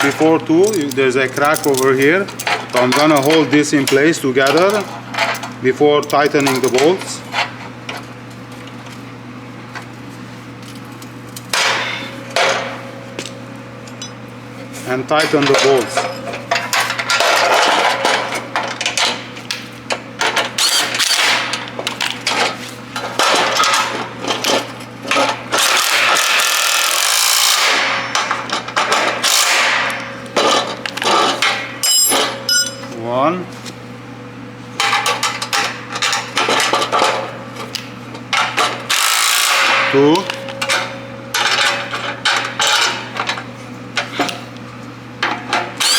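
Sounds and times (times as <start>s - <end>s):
tool clatter on metal: 0.0s - 8.0s, 14.8s - 19.3s, 20.2s - 33.0s, 34.8s - 44.5s
power driver whining: 20.4s - 21.8s, 25.6s - 33.1s, 45.6s - 45.9s.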